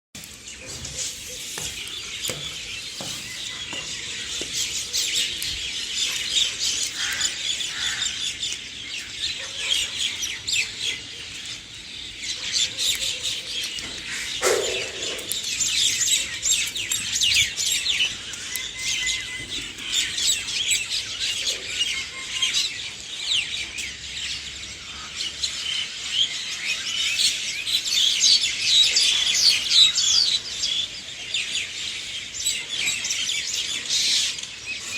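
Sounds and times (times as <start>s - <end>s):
songbirds chirping: 0.2s - 34.9s
lower bird call: 14.1s - 16.1s.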